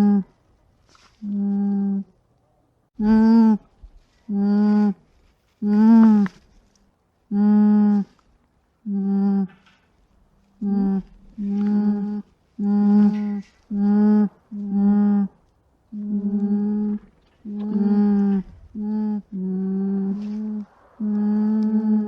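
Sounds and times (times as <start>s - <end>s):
alpaca humming: 5.6s - 6.3s, 10.6s - 22.0s.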